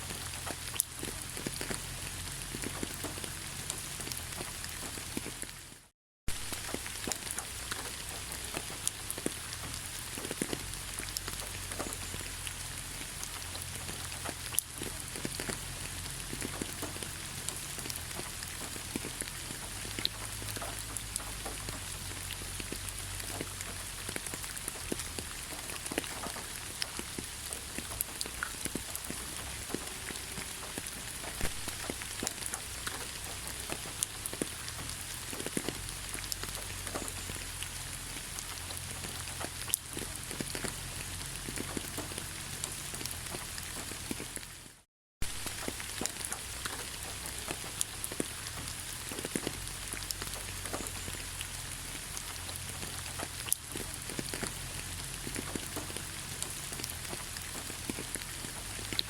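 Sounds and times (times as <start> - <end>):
raindrops ticking: 0.0 - 59.0
steady rain hiss: 0.0 - 59.0.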